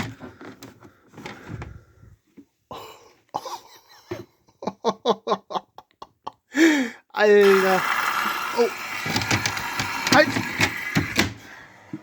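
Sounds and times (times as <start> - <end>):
person laughing: 2.8 - 6.6.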